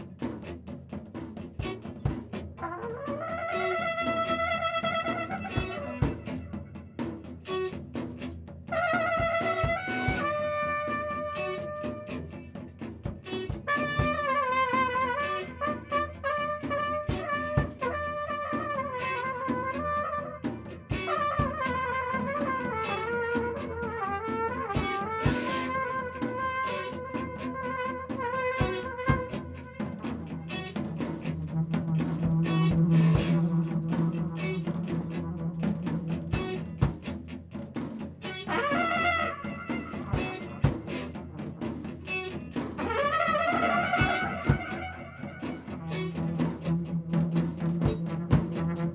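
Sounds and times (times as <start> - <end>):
steady drum beat: 0.0 - 48.9
brass band playing: 2.5 - 7.8, 8.7 - 37.1, 38.2 - 48.9
plucked strings: 28.5 - 48.8.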